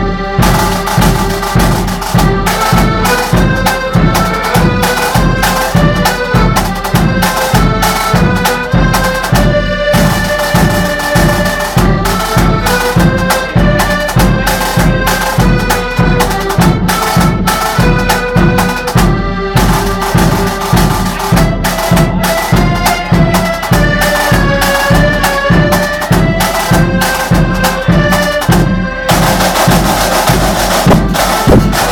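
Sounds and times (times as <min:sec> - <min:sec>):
accordion band playing march: 0:00.0 - 0:31.9
drums beating: 0:00.0 - 0:31.9.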